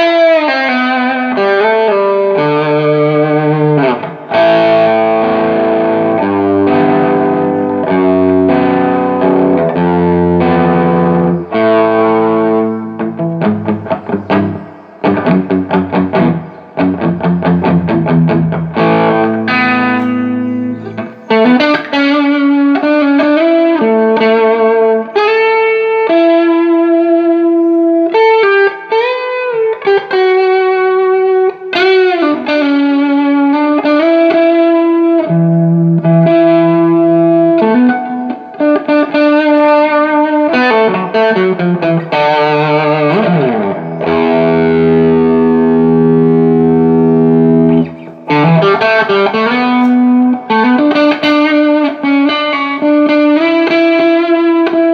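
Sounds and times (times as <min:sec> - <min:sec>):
electric guitar with string bends: 0:00.0 - 0:54.9.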